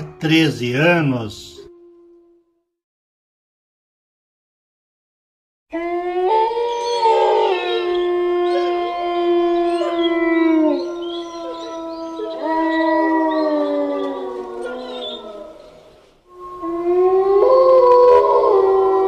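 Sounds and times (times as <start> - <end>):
wolves howling: 5.7 - 19.0.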